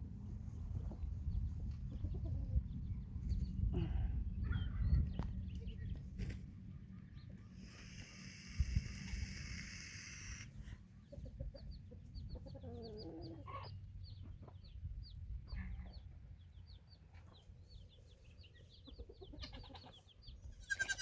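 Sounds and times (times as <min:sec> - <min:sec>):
wind rumbling on microphone: 0:00.0 - 0:06.6, 0:08.4 - 0:10.4
chicks peeping: 0:00.7 - 0:03.7, 0:04.3 - 0:20.9
hen clucking: 0:07.2 - 0:14.7, 0:18.5 - 0:21.0.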